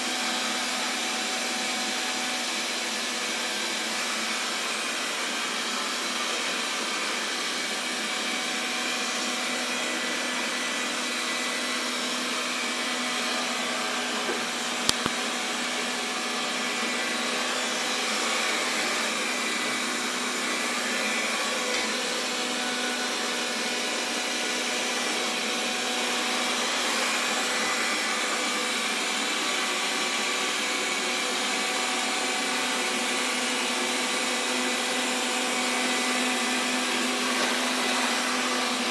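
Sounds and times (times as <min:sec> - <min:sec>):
robot vacuum whirring: 0:03.9 - 0:26.0, 0:32.8 - 0:38.9.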